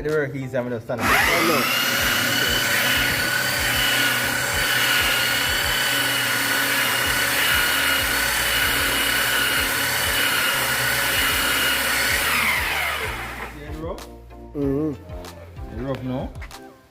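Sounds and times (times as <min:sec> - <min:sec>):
power tool motor whine: 0:01.0 - 0:13.6.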